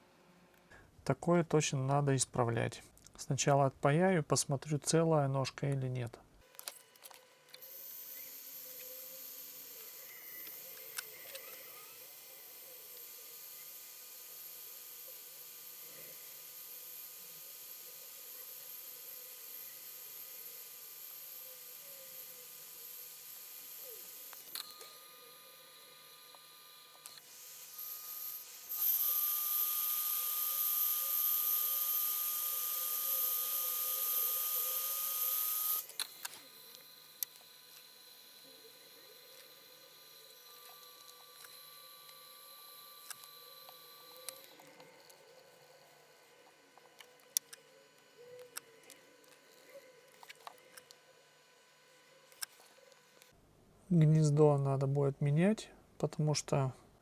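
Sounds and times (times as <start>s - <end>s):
small clicks: 6.5s - 12.2s, 21.6s - 27.3s, 28.2s - 45.3s, 46.4s - 51.0s, 52.2s - 53.4s
hot-air rework station hissing: 6.6s - 53.4s.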